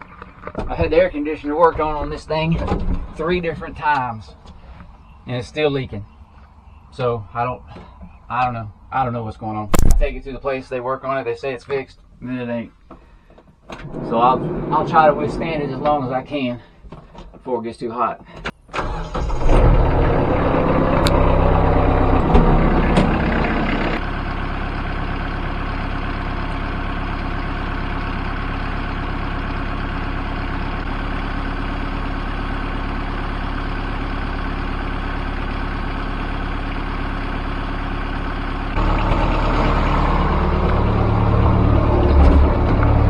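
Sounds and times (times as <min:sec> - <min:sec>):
tractor engine running: 0:00.0 - 0:05.1, 0:09.7 - 0:10.6, 0:18.8 - 0:43.0.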